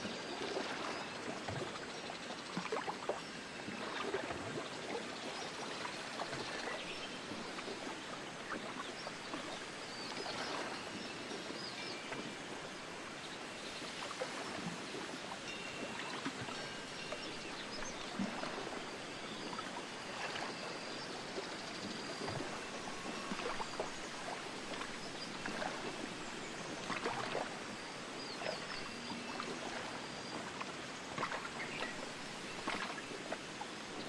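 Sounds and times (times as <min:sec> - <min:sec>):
faint wind bell ringing: 0:15.4 - 0:19.6.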